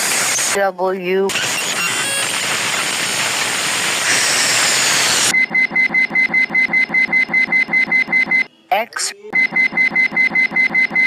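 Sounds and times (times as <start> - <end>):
fast pulsing beep: 5.0 - 8.5, 9.3 - 11.0.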